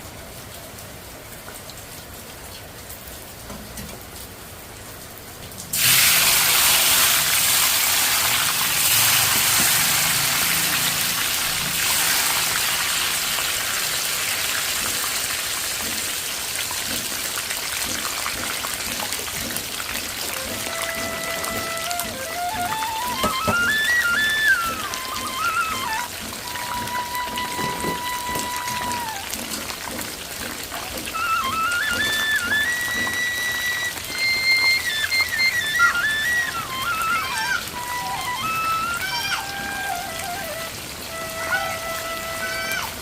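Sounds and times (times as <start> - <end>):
food sizzling in hot oil: 5.7 - 18.6.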